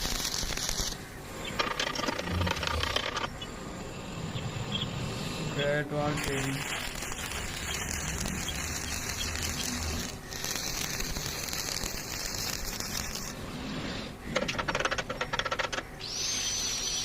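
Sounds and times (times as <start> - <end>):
welding arc crackling: 0.0 - 3.3, 5.4 - 13.4
welding hiss: 0.0 - 14.2, 16.0 - 17.0.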